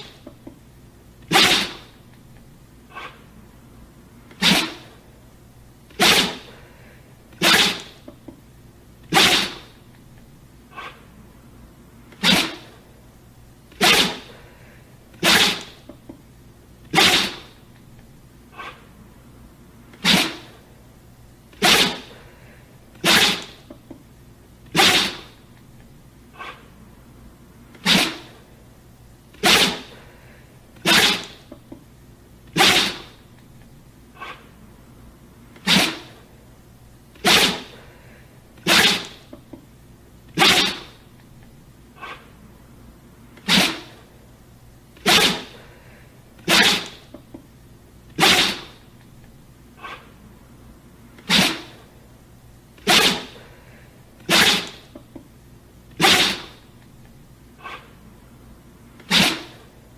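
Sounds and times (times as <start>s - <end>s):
dog sneezing: 0.0s - 0.3s, 1.3s - 2.0s, 2.9s - 3.3s, 4.3s - 5.0s, 5.9s - 8.1s, 9.1s - 9.8s, 10.7s - 11.1s, 12.1s - 12.8s, 13.7s - 16.0s, 16.9s - 17.6s, 18.5s - 18.9s, 19.9s - 20.6s, 21.5s - 23.8s, 24.7s - 25.4s, 26.3s - 26.7s, 27.7s - 28.4s, 29.3s - 31.6s, 32.5s - 33.2s, 34.2s - 34.5s, 35.6s - 36.2s, 37.2s - 39.4s, 40.4s - 41.0s, 42.0s - 42.3s, 43.4s - 44.1s, 45.0s - 47.2s, 48.2s - 48.8s, 49.8s - 50.2s, 51.2s - 51.9s, 52.8s - 55.0s, 56.0s - 56.7s, 57.6s - 58.0s, 59.0s - 59.7s.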